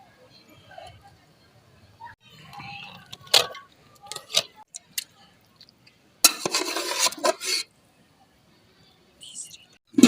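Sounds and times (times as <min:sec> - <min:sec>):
stirring and scraping in pot: 0:06.2 - 0:07.7.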